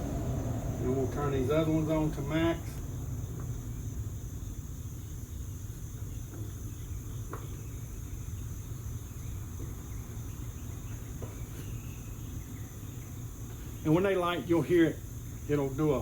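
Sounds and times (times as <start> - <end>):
steady low rumble: 0.0 - 6.0
insects chirping: 0.0 - 16.0.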